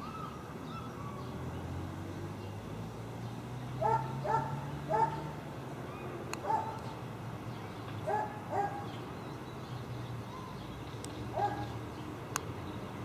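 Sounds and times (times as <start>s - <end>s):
dog barking: 3.8s - 5.3s, 6.4s - 6.8s, 8.1s - 8.9s, 11.4s - 11.7s.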